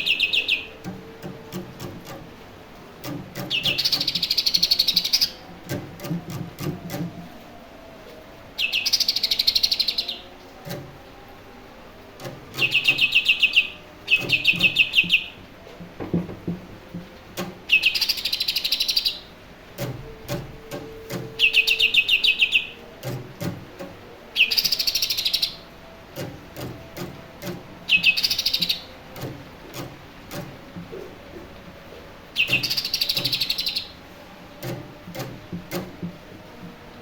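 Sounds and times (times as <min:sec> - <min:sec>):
bird chirping in fast bursts: 0:00.0 - 0:01.0, 0:03.3 - 0:05.5, 0:08.6 - 0:10.3, 0:12.5 - 0:15.4, 0:17.6 - 0:19.4, 0:21.1 - 0:22.8, 0:24.3 - 0:25.8, 0:27.0 - 0:30.4, 0:32.3 - 0:34.0.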